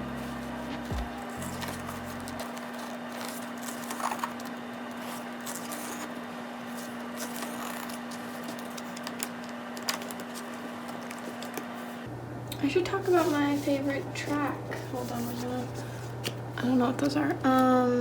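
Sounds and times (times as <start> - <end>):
steady low hum: 0.0 - 18.0
pages turning and rustling: 0.2 - 12.1.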